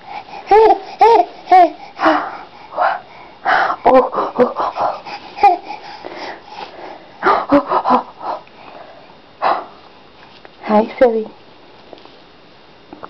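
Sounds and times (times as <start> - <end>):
baby breathing sounds: 0.0 - 3.9, 4.7 - 7.2.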